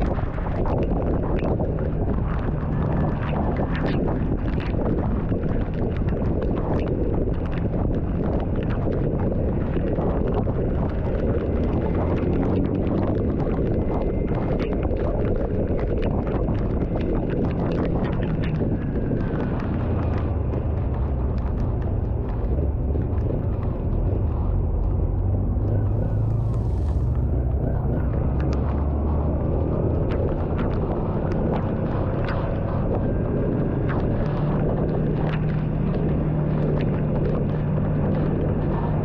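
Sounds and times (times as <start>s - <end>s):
vehicle rumbling on road: 0.0s - 39.0s
wind noise: 0.0s - 39.0s
raindrops ticking: 10.6s - 28.8s.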